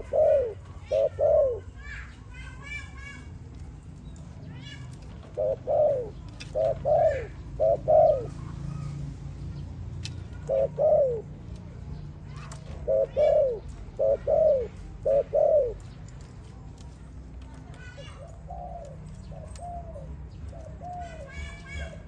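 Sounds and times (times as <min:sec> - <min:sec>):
dove cooing: 0:00.0 - 0:02.0, 0:05.2 - 0:08.9, 0:10.3 - 0:11.4, 0:12.7 - 0:15.9, 0:17.9 - 0:22.0.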